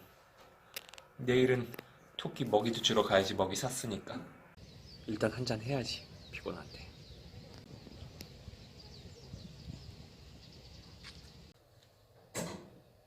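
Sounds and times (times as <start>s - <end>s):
small birds chirping: 4.6s - 11.6s.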